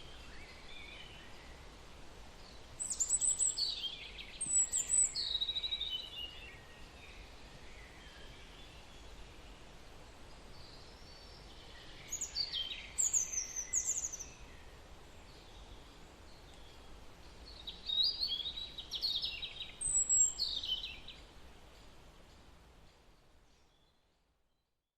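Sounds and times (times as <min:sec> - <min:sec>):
faint background noise: 0:00.0 - 0:24.9
birds chirping: 0:02.4 - 0:09.2, 0:10.4 - 0:22.4.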